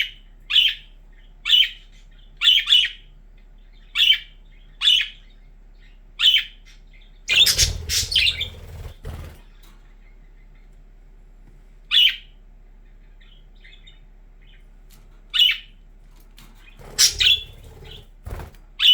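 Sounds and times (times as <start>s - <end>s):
budgerigar contact calls: 6.2s - 8.6s, 16.9s - 18.0s
wings fluttering: 7.3s - 9.8s, 14.9s - 18.9s.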